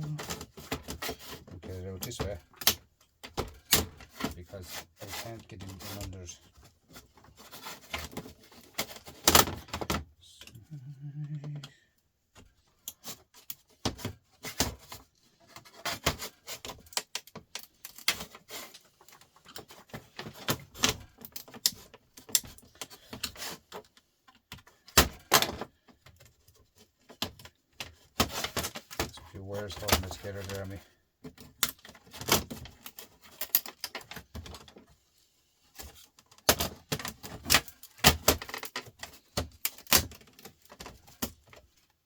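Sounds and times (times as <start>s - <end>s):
clicks knocks and scraping of parts: 0.0s - 10.6s, 11.3s - 42.0s.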